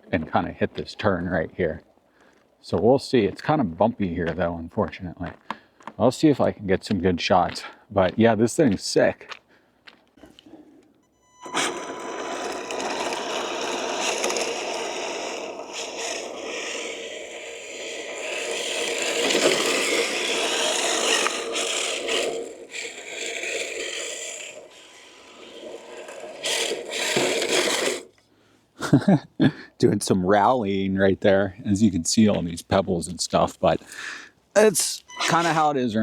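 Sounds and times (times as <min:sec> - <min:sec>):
tyres scraping on gravel: 0:00.0 - 0:10.8, 0:11.5 - 0:28.2, 0:31.6 - 0:36.0
toy car chassis rattling: 0:11.4 - 0:28.2.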